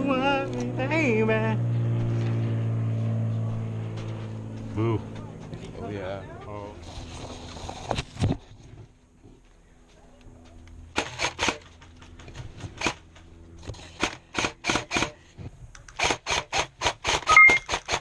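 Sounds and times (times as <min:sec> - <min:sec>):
short beep: 0:17.3 - 0:17.7.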